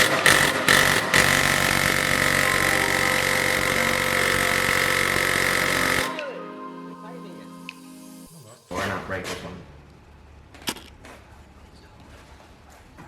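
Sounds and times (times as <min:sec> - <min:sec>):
power tool running: 0:00.0 - 0:06.2.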